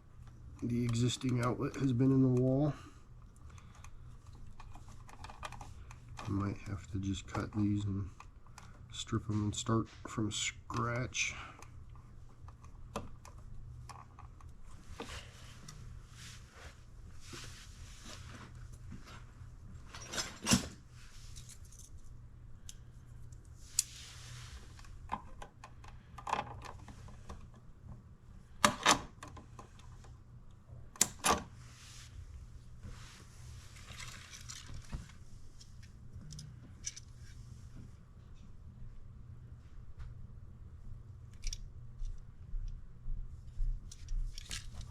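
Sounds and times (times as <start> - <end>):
soft rustling and scraping: 14.0 - 22.2, 22.8 - 25.1, 31.5 - 40.2.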